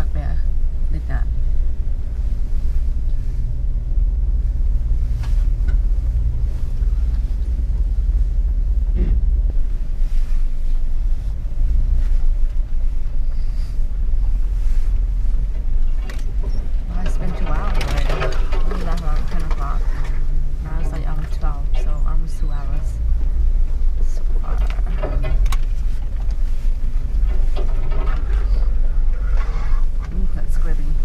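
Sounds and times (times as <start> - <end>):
engine running at low revs: 0.0 - 31.0.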